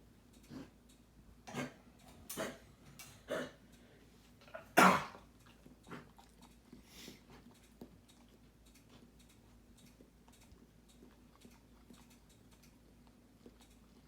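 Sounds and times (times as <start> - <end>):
dog coughing: 1.4 - 3.7, 4.4 - 5.3.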